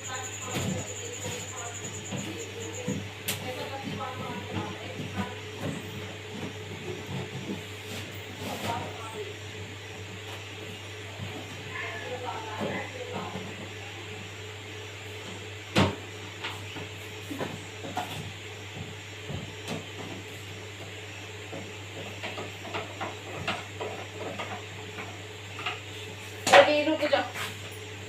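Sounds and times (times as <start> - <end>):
steady low hum: 0.0 - 28.0.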